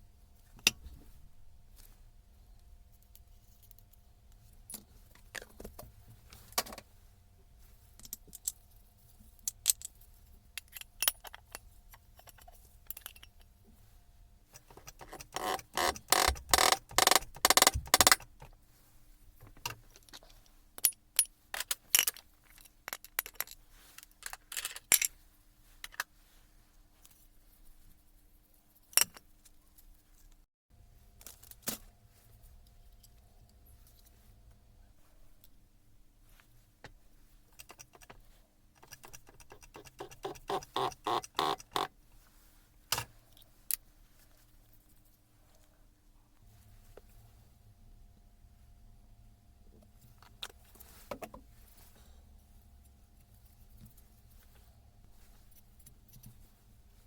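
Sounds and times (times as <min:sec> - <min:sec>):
rapid metallic clicks: 0:14.8 - 0:18.4.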